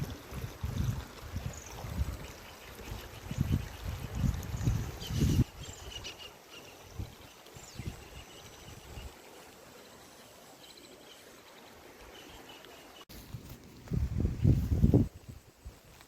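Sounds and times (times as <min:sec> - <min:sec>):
wind buffeting microphone: 0:00.0 - 0:05.7, 0:13.1 - 0:16.0
insect chirping: 0:13.2 - 0:16.0.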